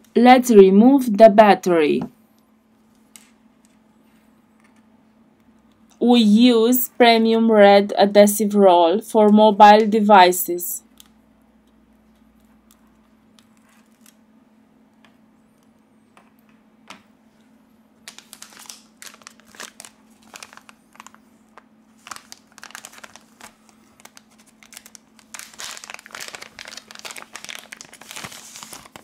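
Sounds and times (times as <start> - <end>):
plastic film crinkling and tearing: 12.7 - 14.2, 18.0 - 29.0.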